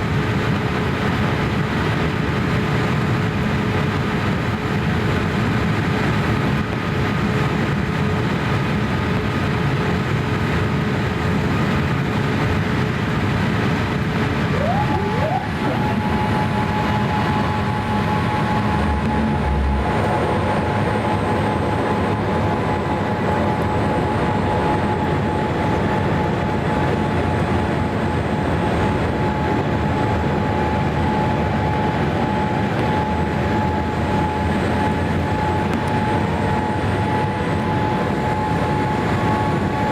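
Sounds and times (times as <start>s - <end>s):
jet engine and airflow rush: 0.0s - 39.9s
rising whine: 11.8s - 39.9s.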